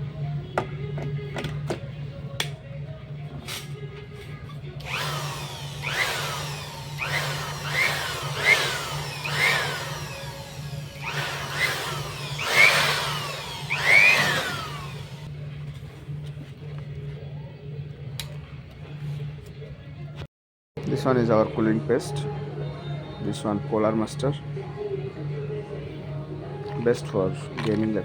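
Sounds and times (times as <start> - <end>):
cooling fan whine: 0.0 - 20.2.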